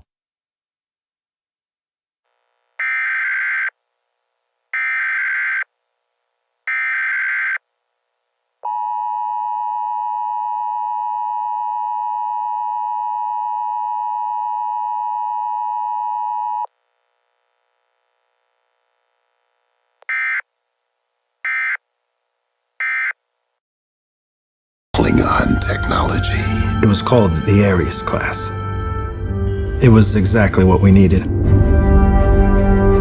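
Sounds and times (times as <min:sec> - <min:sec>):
screeching digital data tones: 0:02.8 - 0:03.7, 0:04.8 - 0:05.7.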